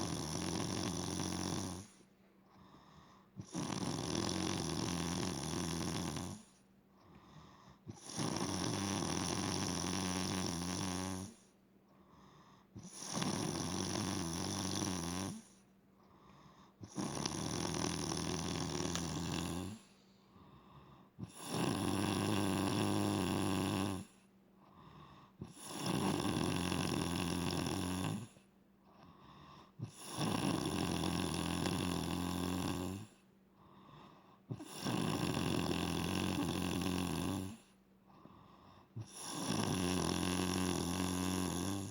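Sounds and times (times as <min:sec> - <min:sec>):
woman snoring loudly: 0:00.0 - 0:02.0, 0:03.4 - 0:06.5, 0:07.9 - 0:11.4, 0:12.8 - 0:15.5, 0:16.8 - 0:19.9, 0:21.2 - 0:24.1, 0:25.4 - 0:28.3, 0:29.8 - 0:33.1, 0:34.5 - 0:37.7, 0:39.0 - 0:41.9.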